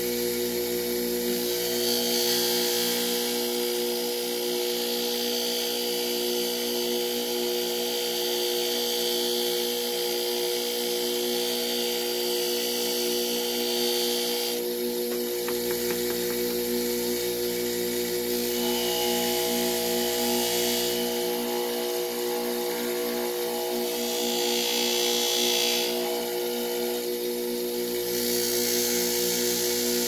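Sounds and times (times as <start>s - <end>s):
buffing wheel motor humming: 14.8s - 17.1s
chisel honing hiss: 14.9s - 16.8s.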